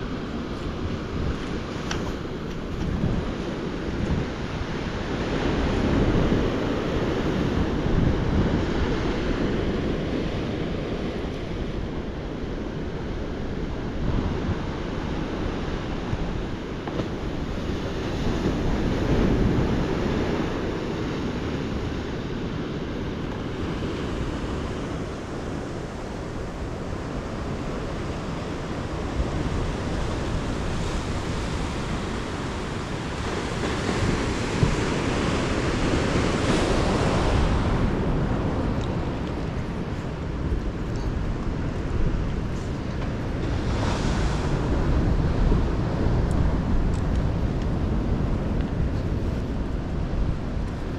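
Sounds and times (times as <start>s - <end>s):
ocean waves breaking: 0.0s - 50.9s
wind buffeting microphone: 0.0s - 50.9s.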